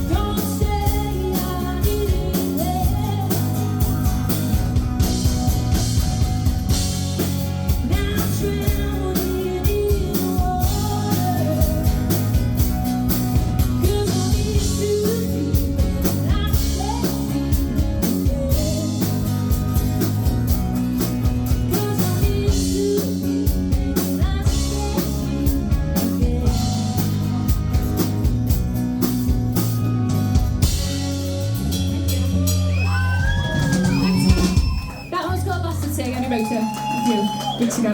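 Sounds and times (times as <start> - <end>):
person singing: 0.0 - 4.0, 7.8 - 12.1, 13.8 - 19.2
live rock band playing: 0.0 - 37.9.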